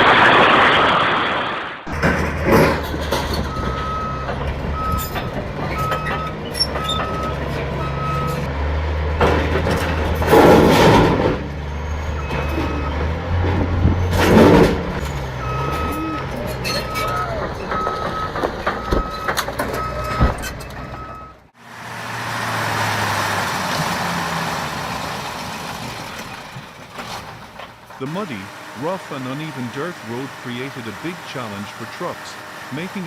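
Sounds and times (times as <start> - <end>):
heavy vehicle engine running: 1.9 - 33.0
reversing alarm beeping: 3.4 - 8.5, 11.8 - 13.1, 15.3 - 21.4.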